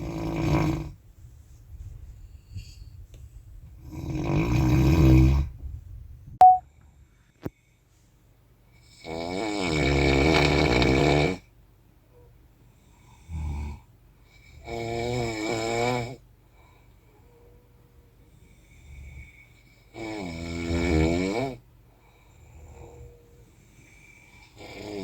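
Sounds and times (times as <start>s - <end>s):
brief loud high tone: 6.4s - 6.6s.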